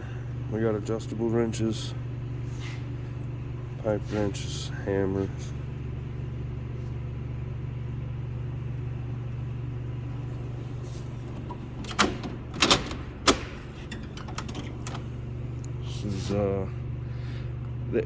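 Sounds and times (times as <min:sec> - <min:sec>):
tool chest drawers clanking: 0:11.2 - 0:15.1.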